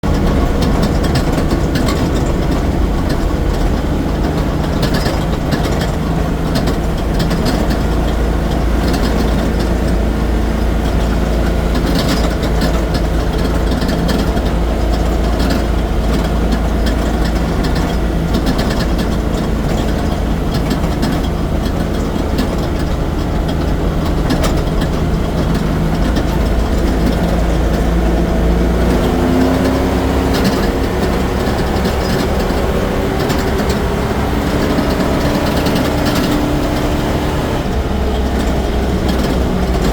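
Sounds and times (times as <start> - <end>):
engine rattle clicks: 0.0 - 39.9
vehicle engine running: 0.0 - 39.9.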